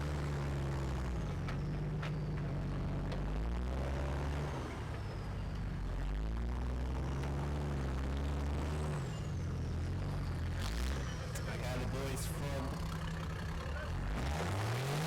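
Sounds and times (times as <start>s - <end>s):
truck engine revving: 6.0s - 15.0s.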